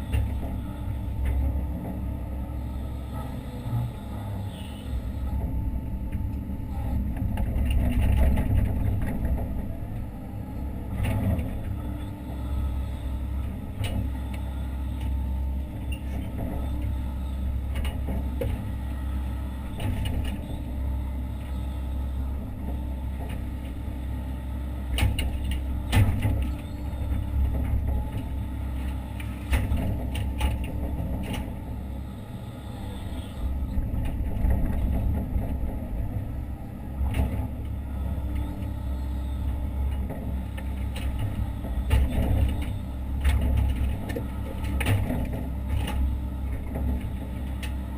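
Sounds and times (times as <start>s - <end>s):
excavator engine and hydraulics: 0.0s - 47.9s
machine knocks and clunks: 24.8s - 31.8s, 33.4s - 47.8s.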